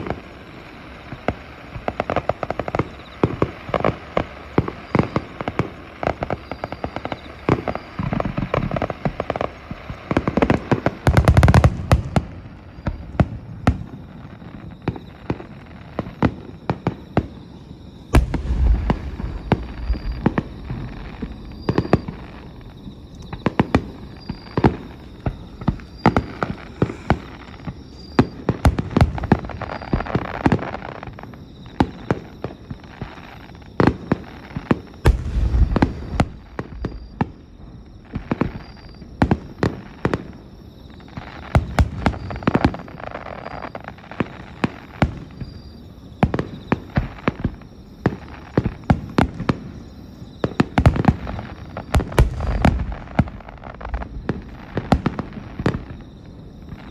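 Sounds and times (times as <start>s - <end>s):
fireworks bangs and crackling: 0.0s - 56.9s
deep firework booms: 18.1s - 30.1s, 35.0s - 38.8s, 50.8s - 56.6s.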